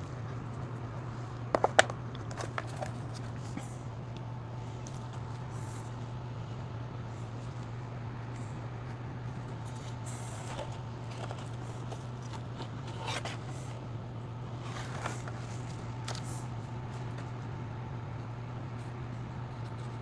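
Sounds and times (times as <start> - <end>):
steady low hum: 0.0 - 20.0
small parts clicking and scraping: 1.3 - 3.7.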